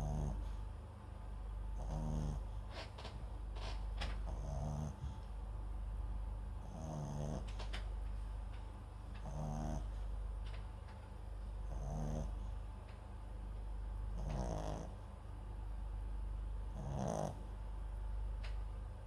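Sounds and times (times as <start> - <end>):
dog snoring: 0.0 - 0.6, 1.7 - 5.3, 6.6 - 7.8, 9.2 - 10.0, 11.6 - 12.6, 14.1 - 15.1, 16.7 - 17.6.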